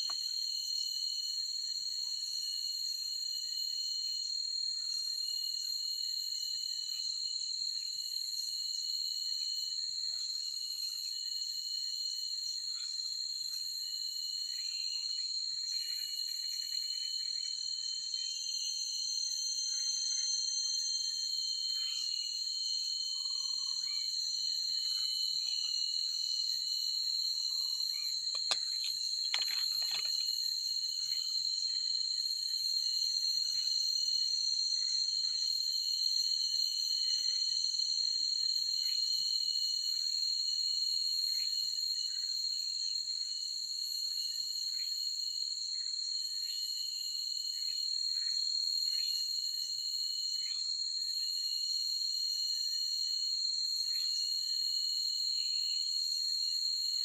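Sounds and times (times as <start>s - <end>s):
high-pitched insect drone: 0.0s - 57.0s
sharp click: 28.3s - 30.2s.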